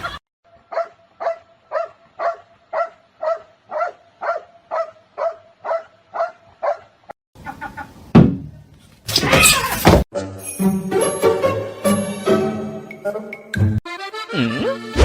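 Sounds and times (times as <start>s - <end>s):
small dog barking: 0.7s - 6.9s.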